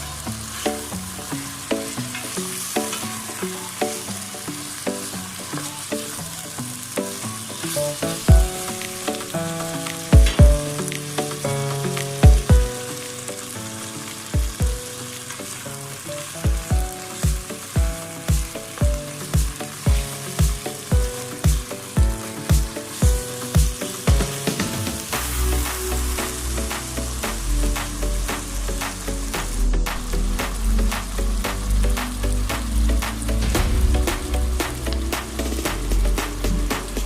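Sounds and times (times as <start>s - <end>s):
background music melody: 0.0s - 37.0s
food sizzling in a pan: 0.0s - 37.0s
bass drum beat: 8.3s - 8.6s, 10.2s - 10.8s, 12.2s - 12.7s, 16.5s - 37.0s.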